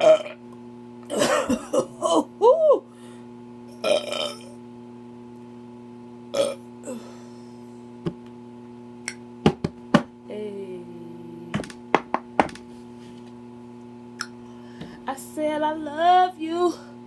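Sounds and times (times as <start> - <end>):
steady low hum: 0.0 - 17.0
objects knocking and tapping: 9.5 - 10.1, 11.5 - 12.6.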